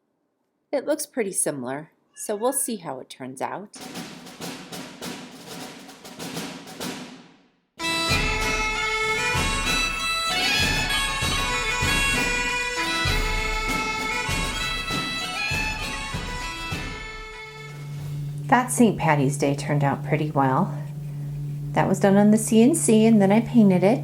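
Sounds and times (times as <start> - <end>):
rhythmic music beat: 7.8 - 17.6
bagpipes playing lively tune: 7.8 - 17.9.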